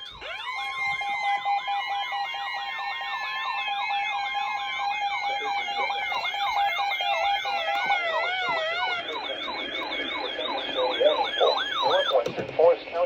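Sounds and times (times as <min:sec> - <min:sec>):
electronic sirens yelping: 0:00.0 - 0:12.3
steady tone: 0:05.8 - 0:12.2.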